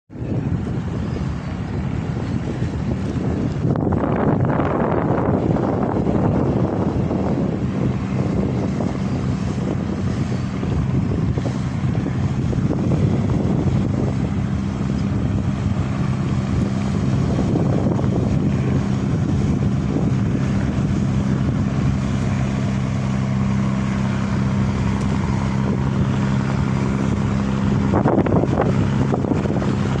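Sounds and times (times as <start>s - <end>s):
ferry engine humming: 0.1s - 30.0s
water noise: 0.1s - 30.0s
wind noise: 0.1s - 30.0s.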